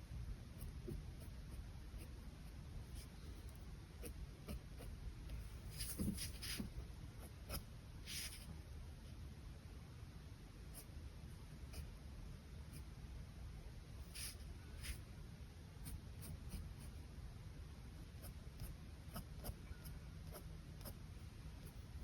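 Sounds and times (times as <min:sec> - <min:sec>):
pen scratching on paper: 0:04.0 - 0:04.9, 0:05.6 - 0:08.5, 0:15.8 - 0:17.0, 0:18.0 - 0:19.6.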